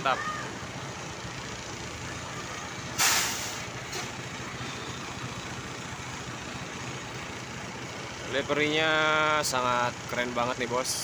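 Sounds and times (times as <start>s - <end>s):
diesel engine idling: 0.0s - 11.0s
air brakes hissing: 2.9s - 4.8s.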